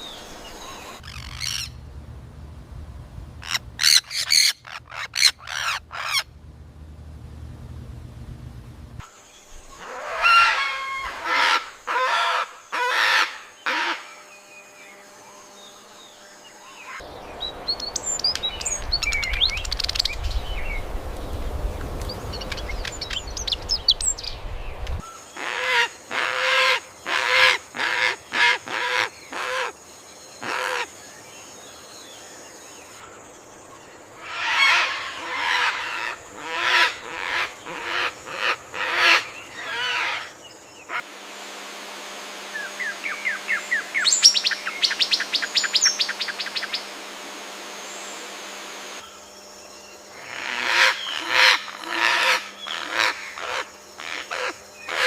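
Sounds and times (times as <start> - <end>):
birds giving harsh calls: 0.8 - 1.8, 3.4 - 6.3, 9.5 - 14.6, 22.1 - 29.8, 30.4 - 30.9, 34.2 - 41.1, 42.3 - 55.0
steady rushing noise: 17.0 - 25.0.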